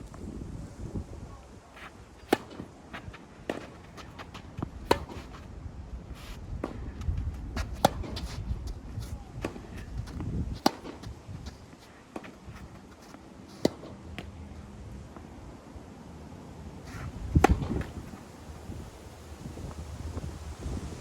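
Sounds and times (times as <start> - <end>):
wind rumble on microphone: 0.0 - 3.2, 4.4 - 11.8, 16.9 - 21.0
tennis ball bouncing: 2.2 - 5.5, 7.5 - 11.2, 12.1 - 14.3, 17.4 - 18.0
tennis racket striking ball: 3.4 - 5.3, 7.6 - 8.3, 10.6 - 11.1.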